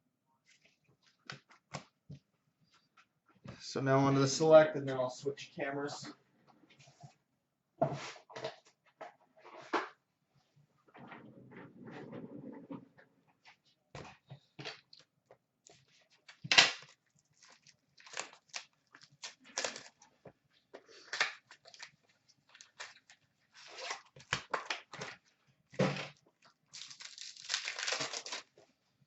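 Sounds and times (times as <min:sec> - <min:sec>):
wrappers and cardboard rustling: 0:15.8 - 0:25.3, 0:26.0 - 0:28.8
wrapper tearing: 0:16.3 - 0:20.0, 0:21.0 - 0:25.1, 0:26.6 - 0:28.6.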